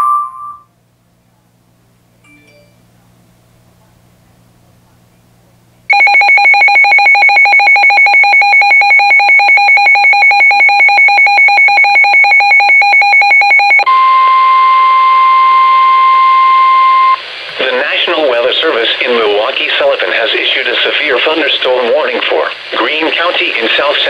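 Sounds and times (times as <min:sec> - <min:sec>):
faint hum: 0:00.0 - 0:24.0
multi-pitched alarm beeping: 0:05.9 - 0:17.2
steady warning alarm tone: 0:05.9 - 0:17.2.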